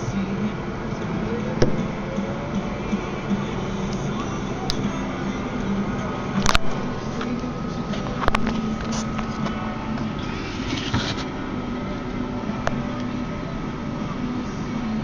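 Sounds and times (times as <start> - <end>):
steady background hum: 0.0 - 15.0.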